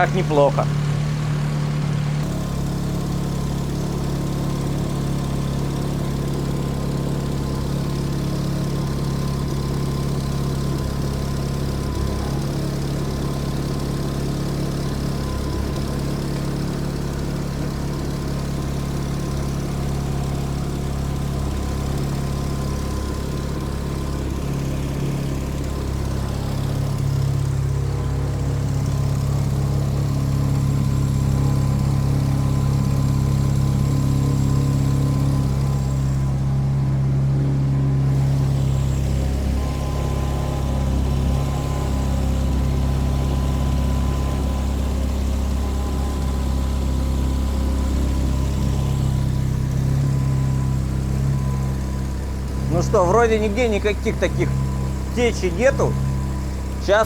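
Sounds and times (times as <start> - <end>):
car engine idling: 0.0 - 57.0.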